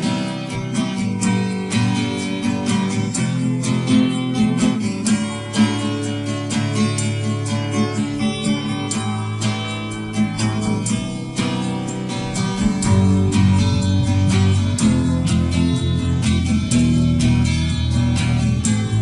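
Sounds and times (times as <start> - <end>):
acoustic guitar strumming: 0.0 - 19.0
bass part: 7.3 - 19.0.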